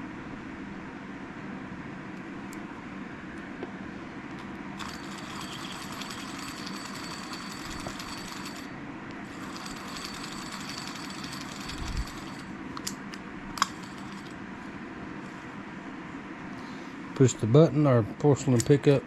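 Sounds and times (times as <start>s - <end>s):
background hiss and hum: 0.0s - 19.0s
fishing reel clicks: 4.8s - 8.6s, 9.4s - 14.3s.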